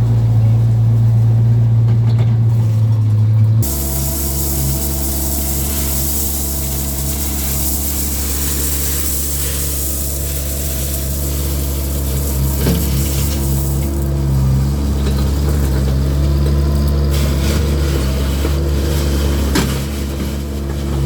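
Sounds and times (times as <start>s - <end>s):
skid steer engine running: 0.0s - 21.0s
high hiss: 3.6s - 14.2s.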